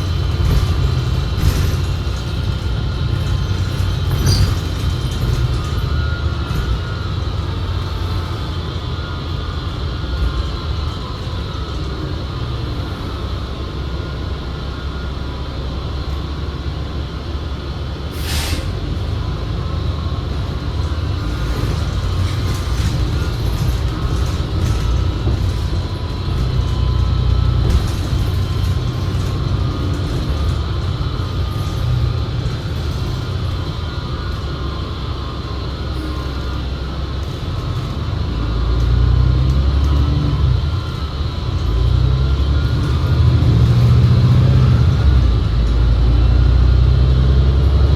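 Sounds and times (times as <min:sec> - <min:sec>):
bus interior rumble: 0:00.0 - 0:47.9
thin high drivetrain whine: 0:00.0 - 0:47.9
air hiss: 0:18.2 - 0:18.8.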